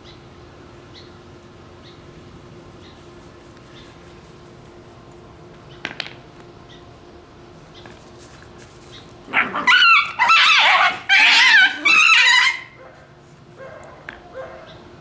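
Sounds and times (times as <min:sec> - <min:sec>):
puppy shrieking: 0:09.3 - 0:13.0.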